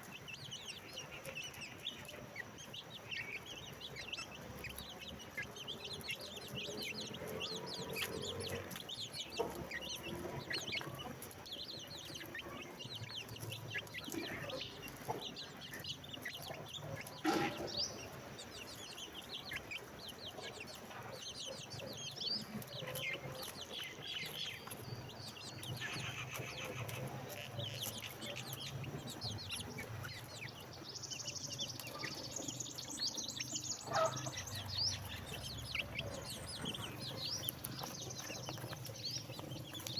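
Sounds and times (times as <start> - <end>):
chicks peeping: 0.0 - 39.9.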